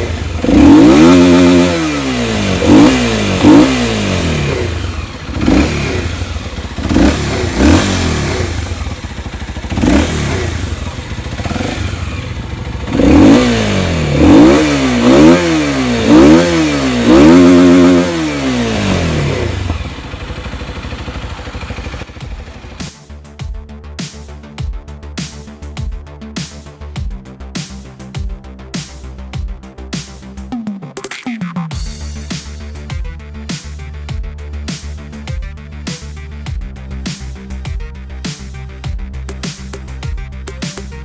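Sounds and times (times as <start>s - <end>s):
motorcycle engine idling and revving: 0.0s - 30.7s, 31.7s - 41.0s.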